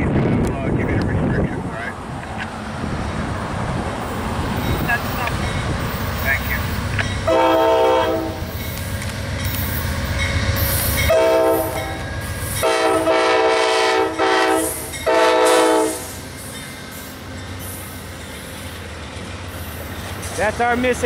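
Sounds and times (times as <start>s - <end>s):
locomotive air horn blasts: 7.3s - 8.5s, 11.0s - 16.1s.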